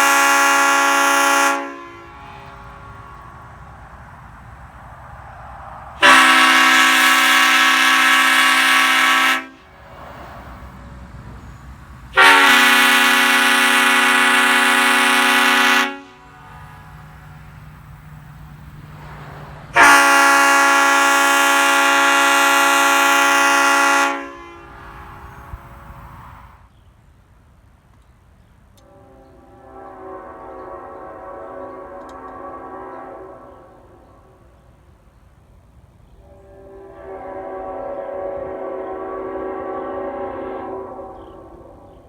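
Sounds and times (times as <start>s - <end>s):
air horn blasts: 0.0s - 5.2s, 5.9s - 9.9s, 12.1s - 17.8s, 19.7s - 26.6s, 28.8s - 34.0s, 36.2s - 41.8s.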